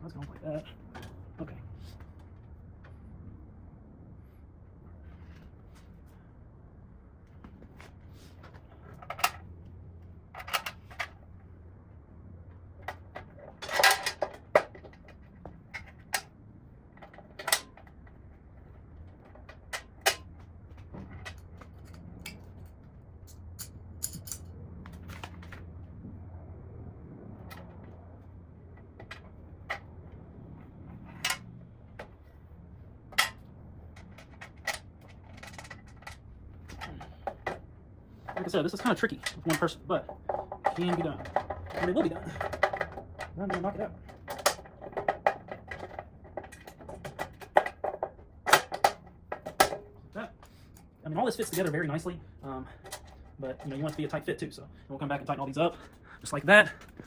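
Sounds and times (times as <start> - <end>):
low steady hum: 0.0 - 57.0
steel panels clicking and clunking: 12.6 - 25.7, 28.6 - 50.2.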